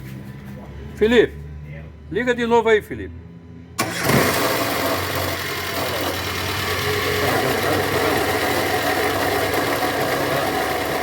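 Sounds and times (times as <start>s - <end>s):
alternator bearing noise: 3.8s - 11.0s
car engine idling: 3.8s - 11.0s.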